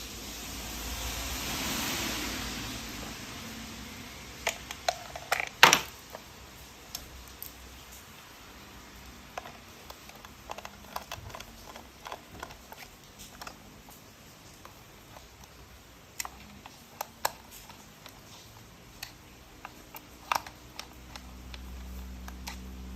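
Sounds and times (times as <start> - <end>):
plastic toy parts clicking: 4.4 - 7.6, 8.9 - 22.9.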